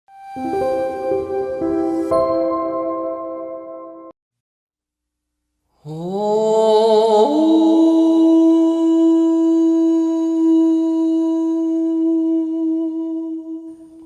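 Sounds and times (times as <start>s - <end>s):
person humming or chanting: 5.8s - 14.0s.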